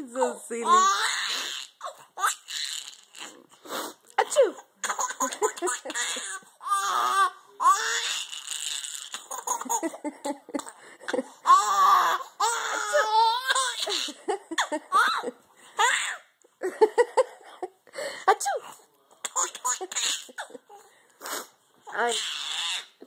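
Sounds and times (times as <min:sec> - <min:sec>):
baby laughing: 0:00.6 - 0:03.4, 0:04.8 - 0:16.3, 0:19.2 - 0:20.8.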